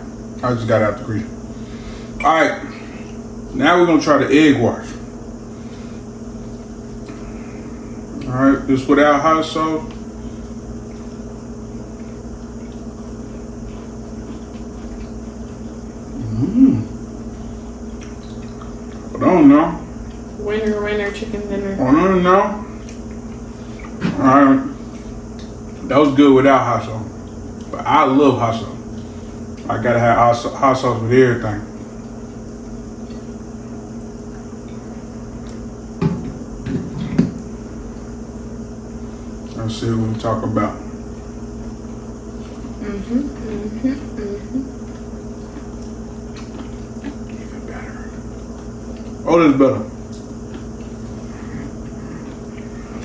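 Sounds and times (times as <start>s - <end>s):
kitchen appliance humming: 0.0s - 53.0s
person humming mmm: 16.1s - 17.3s.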